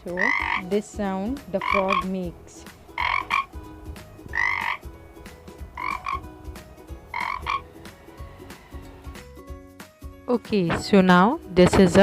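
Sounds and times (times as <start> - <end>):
frog croaking: 0.0 - 0.8, 1.4 - 8.0.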